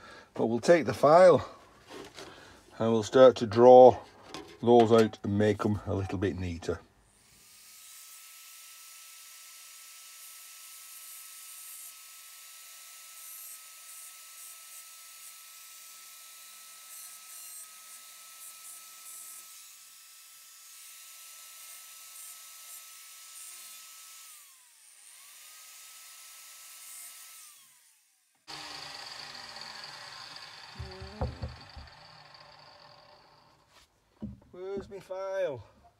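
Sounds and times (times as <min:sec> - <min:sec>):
power tool high whine: 0:07.2 - 0:33.7
grinding against metal: 0:28.8 - 0:33.6.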